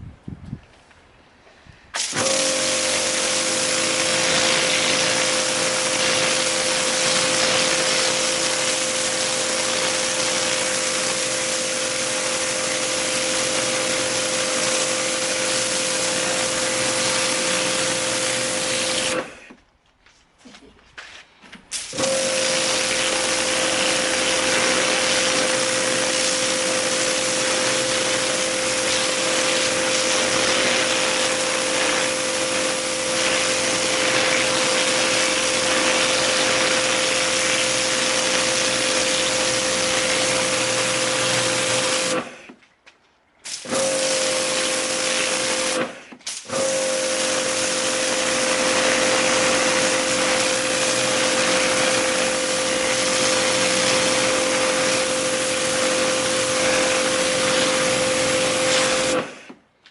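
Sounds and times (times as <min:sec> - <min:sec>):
pressure washer motor hum: 0:02.0 - 0:19.6, 0:21.7 - 0:42.5, 0:43.5 - 0:59.6
water jet hissing: 0:48.6 - 0:59.2.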